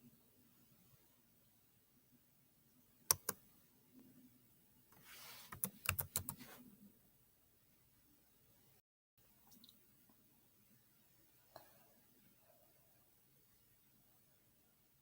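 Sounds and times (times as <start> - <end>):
computer keyboard typing: 3.1 - 3.4, 5.5 - 6.4
sharp clicks: 3.1 - 3.4.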